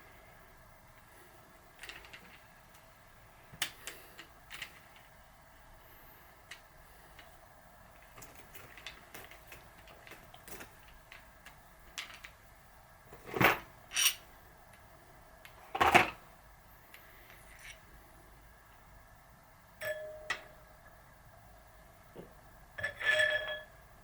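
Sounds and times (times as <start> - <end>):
metallic scrapes: 22.8 - 23.7.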